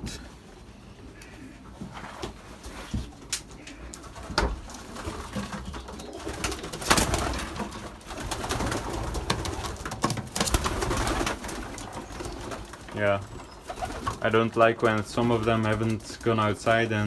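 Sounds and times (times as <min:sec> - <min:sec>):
pigeons cooing: 0:00.0 - 0:17.0
rustling: 0:00.0 - 0:17.0
knocks and clatter: 0:03.3 - 0:14.2.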